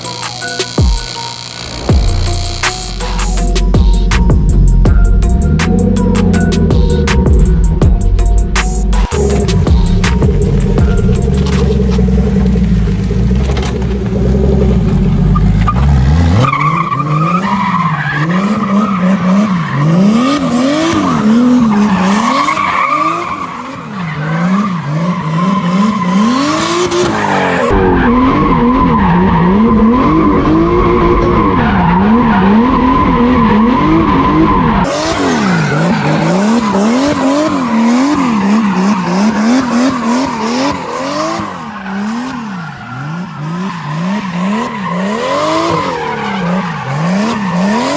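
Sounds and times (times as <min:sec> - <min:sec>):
car engine revving: 0:00.0 - 0:47.9
tyres squealing: 0:09.0 - 0:29.5, 0:30.2 - 0:47.9.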